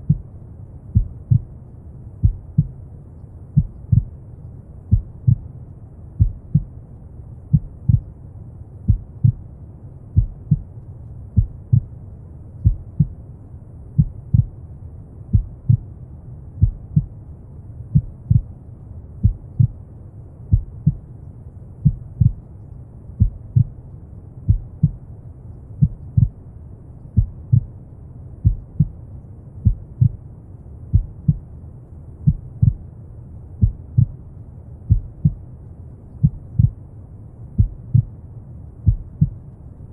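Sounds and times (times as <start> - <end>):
heartbeat double thumps: 0.0 - 0.3, 0.9 - 1.5, 2.2 - 2.8, 3.6 - 4.2, 4.9 - 5.4, 6.2 - 6.7, 7.5 - 8.1, 8.9 - 9.4, 10.2 - 10.7, 11.4 - 11.9, 12.6 - 13.2, 14.0 - 14.6, 15.3 - 15.8, 16.6 - 17.1, 17.9 - 18.5, 19.2 - 19.8, 20.5 - 21.0, 21.8 - 22.4, 23.2 - 23.7, 24.5 - 25.0, 25.8 - 26.4, 27.2 - 27.7, 28.4 - 29.0, 29.6 - 30.2, 30.9 - 31.4, 32.2 - 32.8, 33.6 - 34.2, 34.9 - 35.4, 36.2 - 36.8, 37.6 - 38.1, 38.8 - 39.4
low rumbling brown noise: 0.0 - 39.9.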